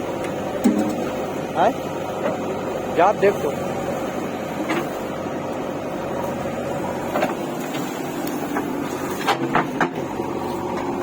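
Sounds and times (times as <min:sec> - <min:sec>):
engine running: 0:00.0 - 0:11.0.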